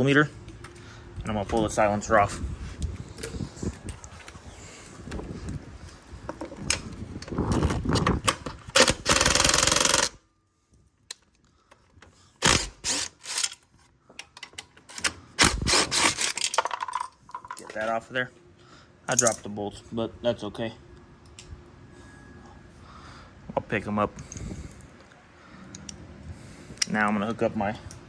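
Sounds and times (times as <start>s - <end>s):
cordless drill rattling: 7.4s - 10.2s, 12.4s - 13.8s, 14.8s - 17.0s.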